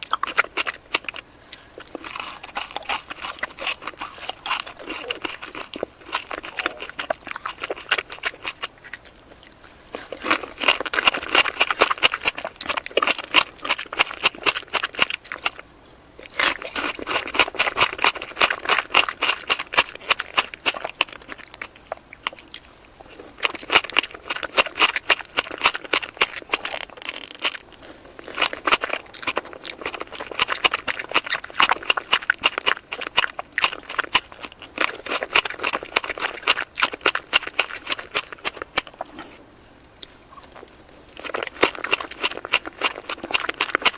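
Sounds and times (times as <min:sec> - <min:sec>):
person chewing cake: 0:00.0 - 0:43.9.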